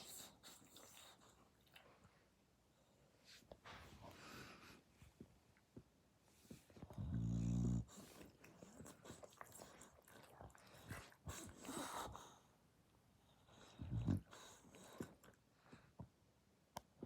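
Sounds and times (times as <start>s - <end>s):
dog snoring: 6.9s - 8.2s, 13.7s - 14.6s.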